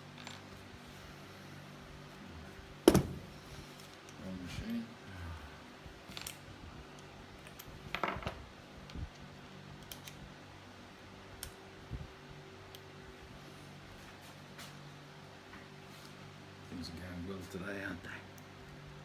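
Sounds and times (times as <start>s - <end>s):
steady low hum: 0.0s - 19.0s
tools knocking on wood: 2.9s - 3.2s.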